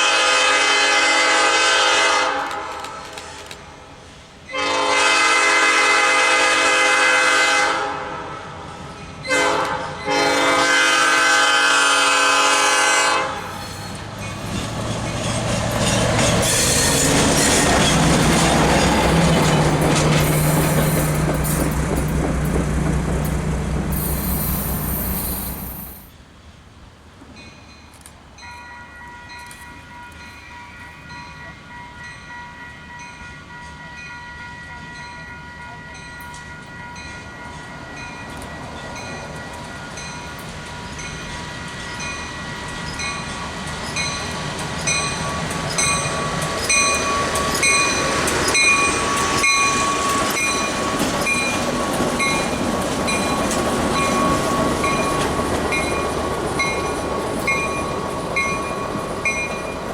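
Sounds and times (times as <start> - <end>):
diesel locomotive engine: 0.0 - 27.4, 33.0 - 59.9
locomotive bell ringing: 16.8 - 22.6, 28.4 - 59.9.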